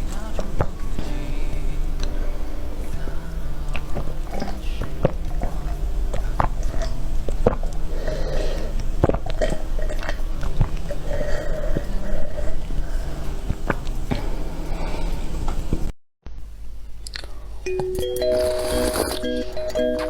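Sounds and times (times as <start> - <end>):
person gulping: 6.1 - 12.8
wet lip and tongue clicks: 17.0 - 17.3.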